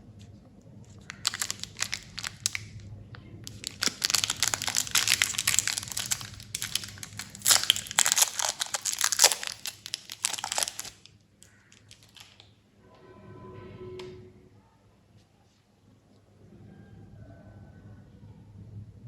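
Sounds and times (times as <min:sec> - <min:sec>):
candy wrappers crinkling: 0:00.8 - 0:12.5.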